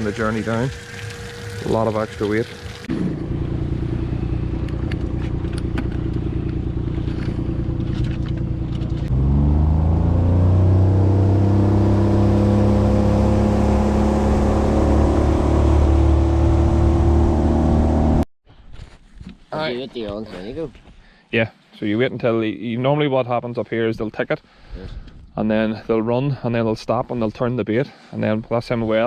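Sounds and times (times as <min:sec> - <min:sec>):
engine running and revving: 0:02.8 - 0:18.2.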